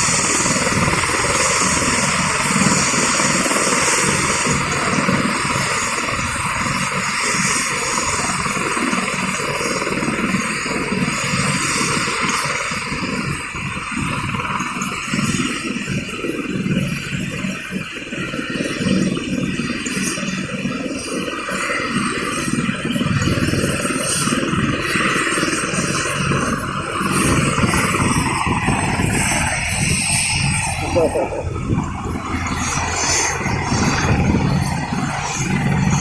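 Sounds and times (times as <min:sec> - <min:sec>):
helicopter rotors and engine: 0:00.0 - 0:36.0.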